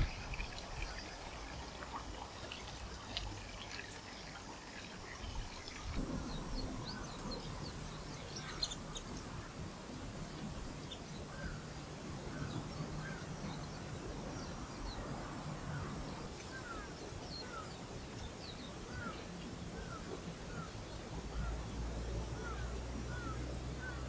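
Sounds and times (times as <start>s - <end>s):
low steady hum: 5.9s - 24.0s
birds chirping: 6.0s - 20.8s.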